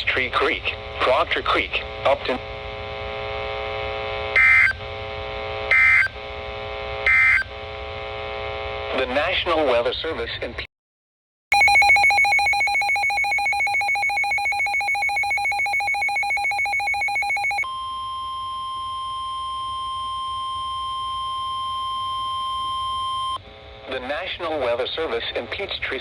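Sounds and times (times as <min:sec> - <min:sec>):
steady single-pitch alarm tone: 0:04.3 - 0:04.8, 0:05.7 - 0:06.2, 0:07.0 - 0:07.5, 0:11.5 - 0:23.4
trilling two-pitch alarm: 0:05.7 - 0:06.2, 0:07.1 - 0:07.5, 0:11.5 - 0:23.4.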